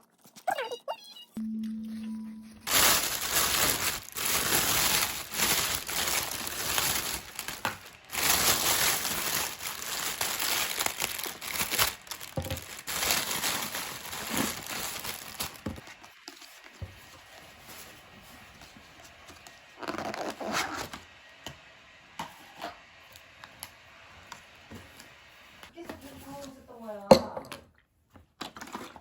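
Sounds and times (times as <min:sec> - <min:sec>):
crinkling and rustling: 0:02.5 - 0:21.0.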